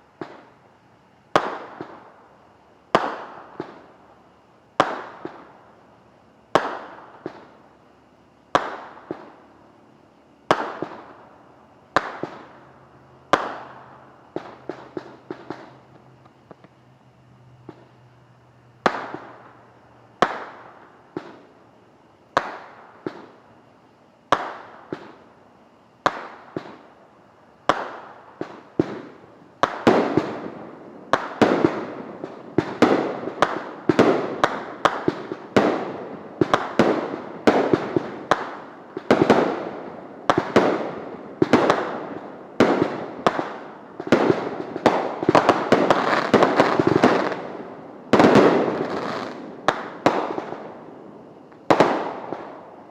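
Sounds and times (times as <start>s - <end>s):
fireworks bangs: 6.6s - 7.6s, 13.3s - 16.7s, 27.6s - 52.9s.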